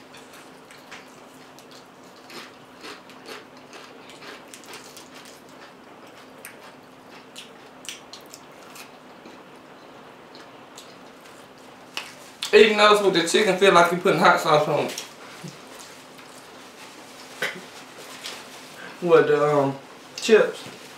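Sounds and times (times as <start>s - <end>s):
crunchy chewing: 0.1s - 12.5s.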